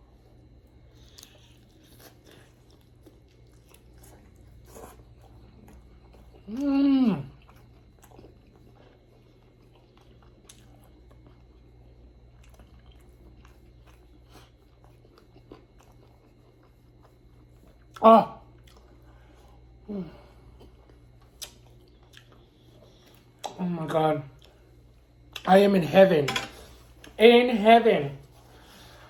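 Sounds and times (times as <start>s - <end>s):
person chewing food: 0.1s - 23.6s
person humming mmm: 6.5s - 7.4s, 19.9s - 20.3s.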